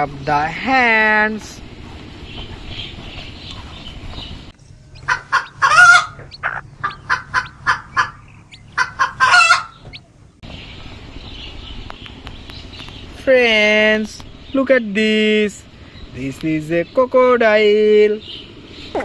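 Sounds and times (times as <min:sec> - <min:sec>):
chicken clucking: 0:04.9 - 0:10.2
chicken squawks: 0:05.0 - 0:10.1.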